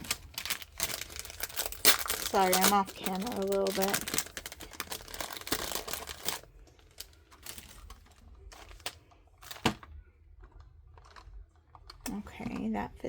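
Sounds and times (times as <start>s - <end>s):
crinkling rustle: 0.0s - 9.9s.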